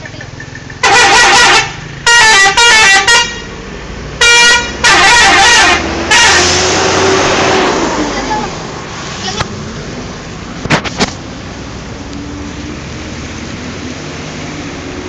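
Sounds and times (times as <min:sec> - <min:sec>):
bus musical horn: 0:00.8 - 0:03.6, 0:04.2 - 0:07.0.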